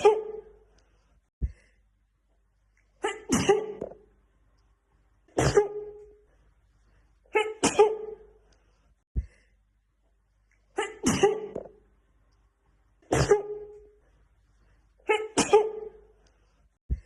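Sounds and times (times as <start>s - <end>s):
woman sneezing: 0.0s - 0.5s, 3.0s - 3.9s, 5.3s - 6.0s, 7.3s - 8.3s, 10.8s - 11.6s, 13.0s - 13.7s, 15.1s - 16.0s.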